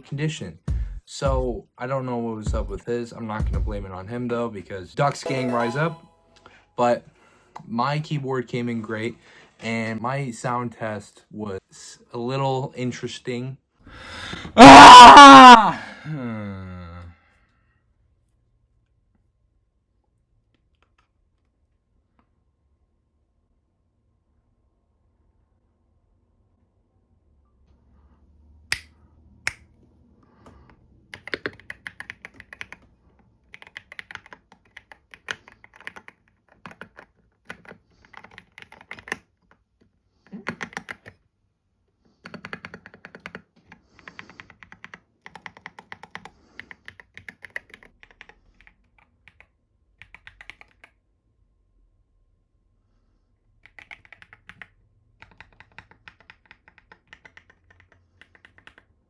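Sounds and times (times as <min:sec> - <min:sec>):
mechanical keyboard typing: 0:31.1 - 0:39.6, 0:40.3 - 0:41.2, 0:42.2 - 0:51.0, 0:53.6 - 0:58.9.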